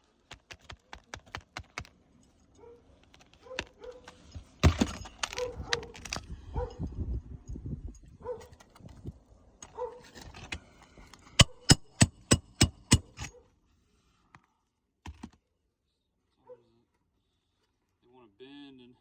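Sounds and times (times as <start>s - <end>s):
hammer striking metal: 11.3s - 13.3s.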